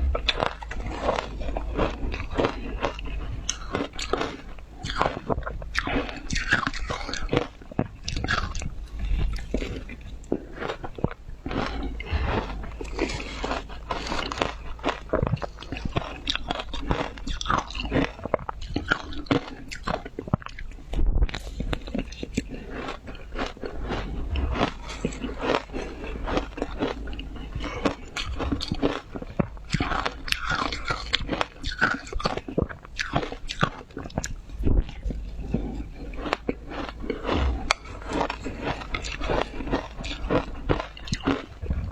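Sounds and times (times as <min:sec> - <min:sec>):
person crunching ice: 0:00.0 - 0:07.5, 0:36.0 - 0:41.5.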